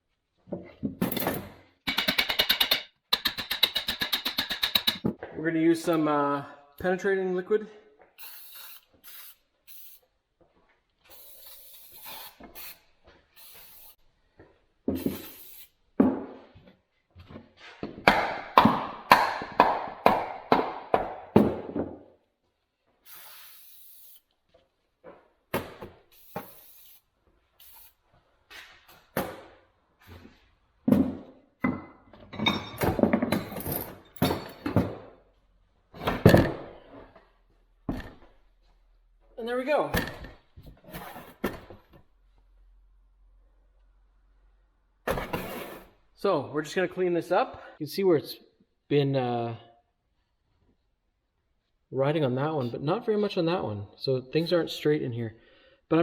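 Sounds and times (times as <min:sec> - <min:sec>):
aerosol spray hissing: 0:08.2 - 0:10.0, 0:13.4 - 0:14.0, 0:15.0 - 0:15.8, 0:23.0 - 0:24.2, 0:26.1 - 0:28.0.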